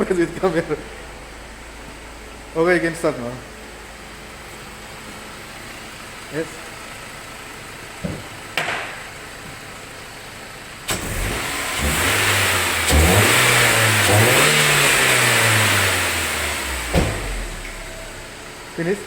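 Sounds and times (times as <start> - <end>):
car engine revving: 10.9 - 18.8.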